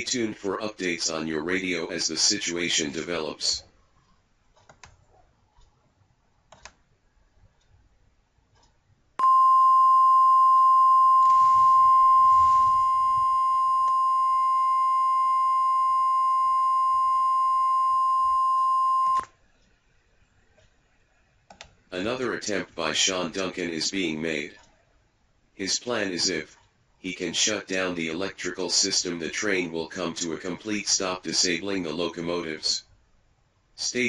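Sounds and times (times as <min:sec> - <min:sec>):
faint clicks: 0:04.6 - 0:05.8, 0:06.5 - 0:06.8, 0:21.5 - 0:21.8.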